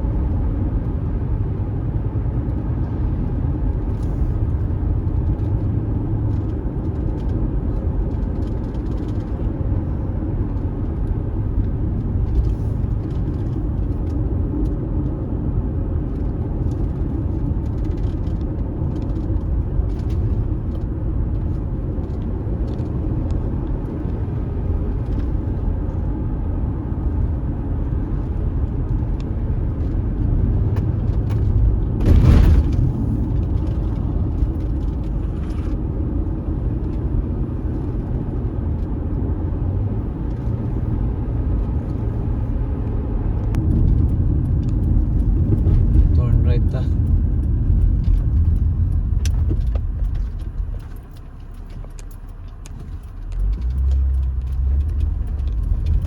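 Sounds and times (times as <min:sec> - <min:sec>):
vehicle engine and tyres rumbling: 0:00.0 - 0:56.0.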